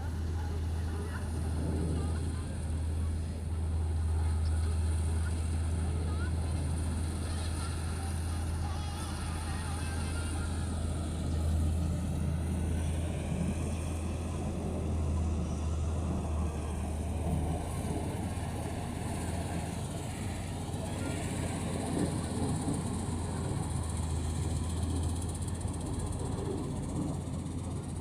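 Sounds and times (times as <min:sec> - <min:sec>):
combine harvester engine drone: 0:00.0 - 0:28.0.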